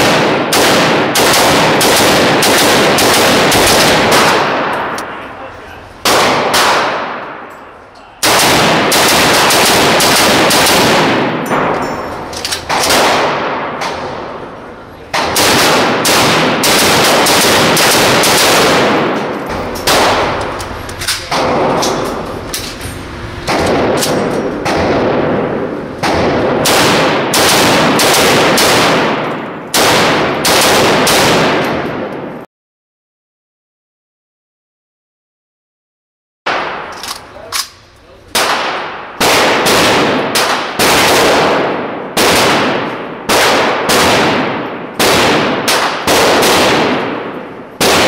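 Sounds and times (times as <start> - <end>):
rifle shots echoing: 0.0 - 32.4, 36.5 - 48.0.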